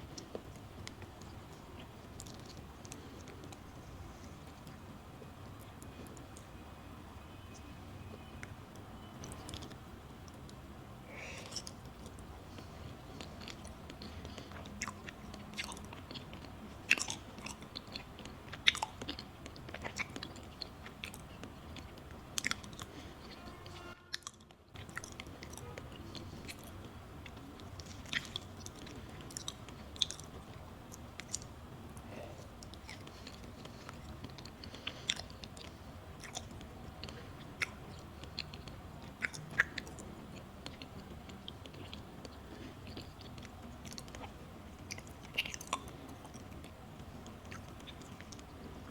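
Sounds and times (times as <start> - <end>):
mouth clicks and smacks: 0.0 - 6.6, 7.3 - 48.9
soft moist chewing: 0.0 - 48.9.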